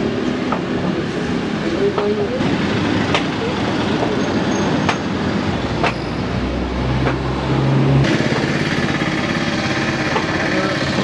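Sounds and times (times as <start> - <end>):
roadside traffic noise: 0.0 - 11.0
vehicle engine hum passing: 0.3 - 11.0
sharp knocks: 4.8 - 5.1, 5.8 - 6.1, 7.0 - 7.3, 10.0 - 10.6.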